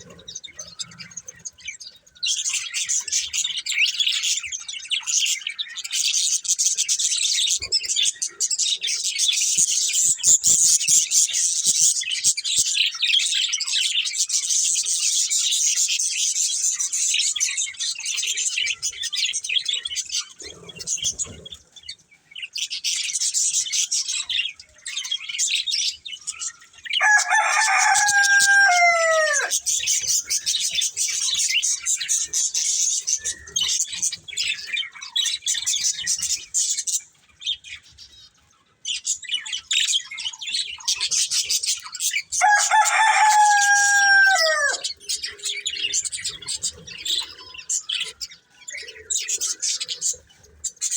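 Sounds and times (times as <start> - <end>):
budgerigars chattering: 0.0 - 38.2, 38.9 - 50.9
rooster crowing: 27.0 - 29.7, 42.4 - 44.9.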